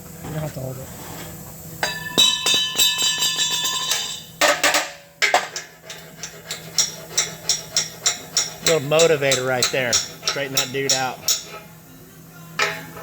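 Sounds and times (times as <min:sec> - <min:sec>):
hammer striking steel: 0:01.8 - 0:05.5, 0:06.8 - 0:11.6, 0:12.6 - 0:13.0.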